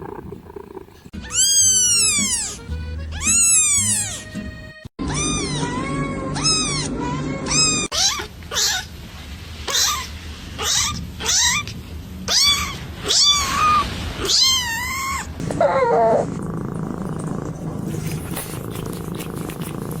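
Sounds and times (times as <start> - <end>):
kittens meowing: 0.0 - 4.3.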